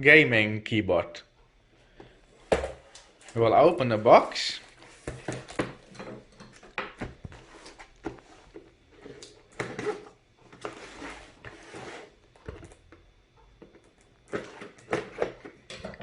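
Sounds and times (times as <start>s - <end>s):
cardboard scraping and rustling: 7.1s - 12.6s.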